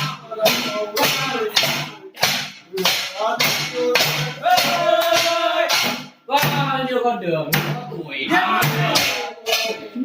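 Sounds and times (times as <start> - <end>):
person singing over music: 0.0 - 6.0.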